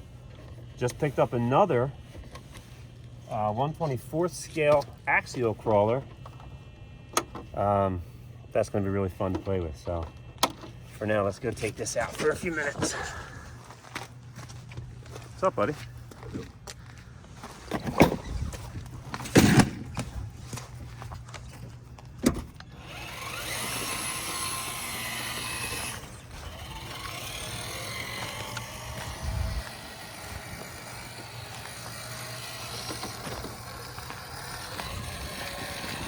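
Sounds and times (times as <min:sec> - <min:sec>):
electric motor whine: 0:22.3 - 0:36.0.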